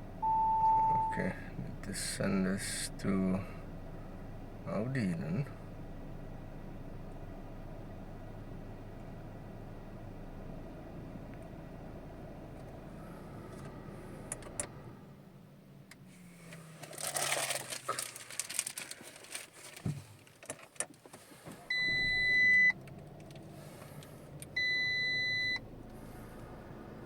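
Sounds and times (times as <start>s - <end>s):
car electronic warning beeps: 0.2s - 1.4s, 21.7s - 22.8s, 24.4s - 25.7s
rustling: 16.1s - 21.7s.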